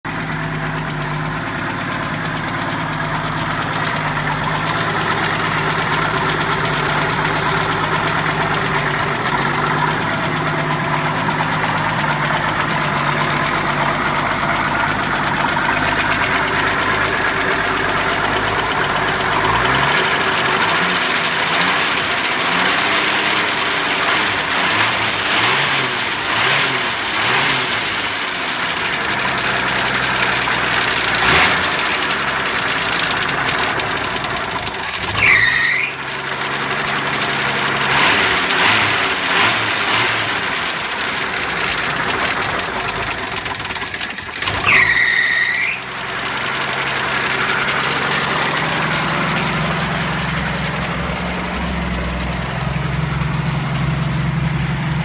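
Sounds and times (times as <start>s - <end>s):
car engine revving: 0.0s - 55.0s
engine knocking: 0.0s - 55.0s
high-pitched squeals: 34.5s - 36.1s, 44.1s - 46.1s.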